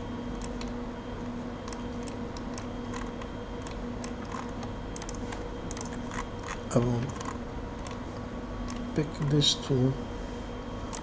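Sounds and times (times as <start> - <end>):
low electrical hum: 0.0 - 11.0
mouse and keyboard clicks: 1.6 - 8.0.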